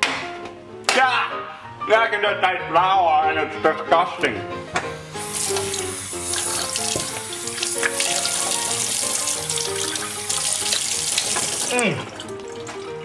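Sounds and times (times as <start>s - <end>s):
background music: 0.0s - 13.0s
water running from a tap: 5.2s - 13.0s.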